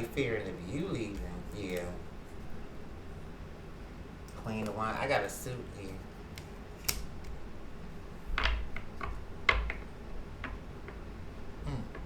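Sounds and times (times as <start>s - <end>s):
cards tapping and flicking: 1.0s - 1.9s.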